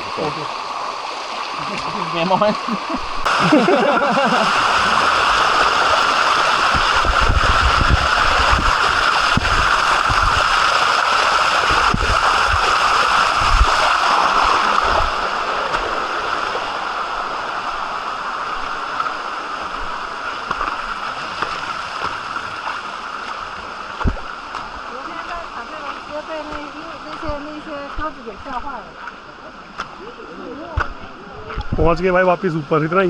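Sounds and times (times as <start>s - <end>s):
water rushing over rocks: 0.0s - 33.0s
wind buffeting microphone: 4.5s - 15.3s.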